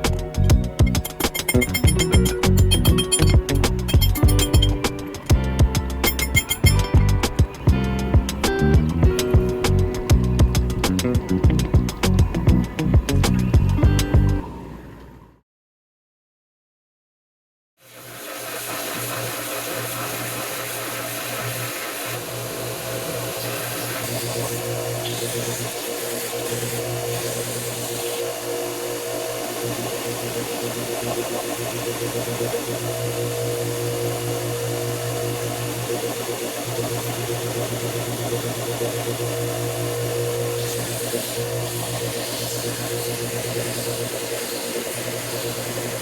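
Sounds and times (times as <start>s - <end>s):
workshop machine whirring: 0.0s - 15.4s, 17.9s - 46.0s
low hum: 0.1s - 13.7s.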